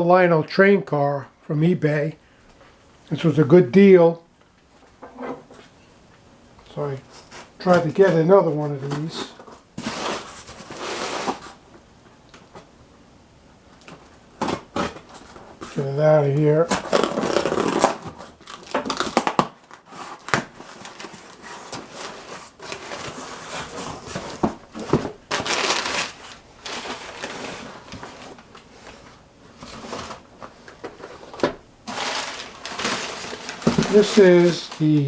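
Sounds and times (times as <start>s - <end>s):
packaging crinkling and rustling: 6.7s - 11.6s, 16.6s - 35.0s.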